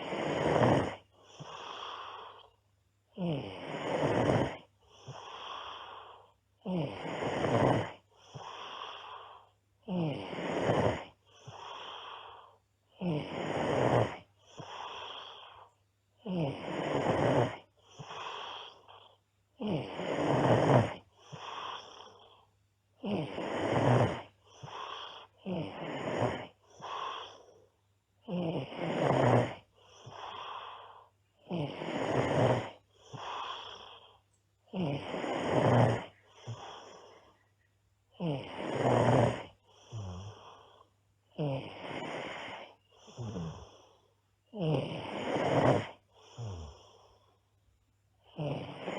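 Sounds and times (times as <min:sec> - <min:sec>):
girl snoring: 0:00.0 - 0:37.5, 0:38.1 - 0:47.4, 0:48.2 - 0:48.9.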